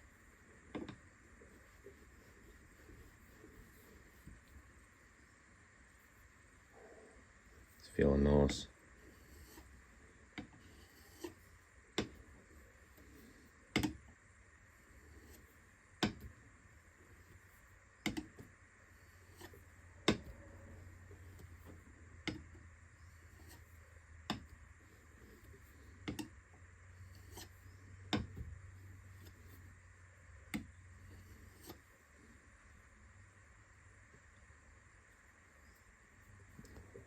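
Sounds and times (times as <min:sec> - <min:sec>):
faint low hum: 0:00.0 - 0:37.0
chisel tapping on whetstone: 0:24.3 - 0:24.5.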